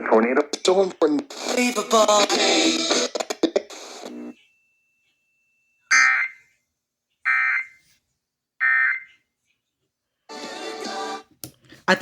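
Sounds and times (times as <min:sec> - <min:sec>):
radio clicks and hiss: 0:00.0 - 0:04.4.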